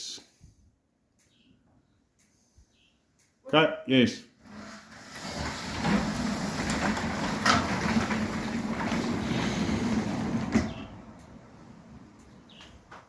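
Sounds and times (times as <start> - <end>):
garage door rolling: 4.4 - 13.0
door clunk: 5.5 - 11.0.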